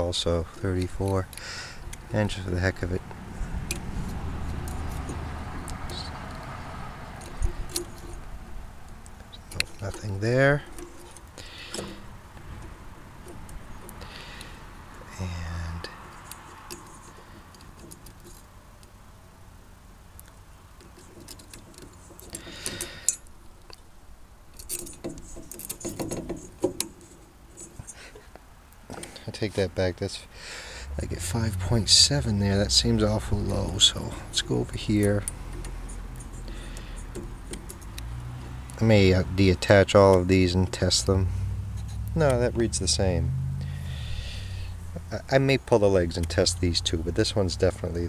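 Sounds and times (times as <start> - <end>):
metal test leads rattling: 9.3 - 14.4, 31.0 - 48.0
low steady hum: 29.2 - 48.0.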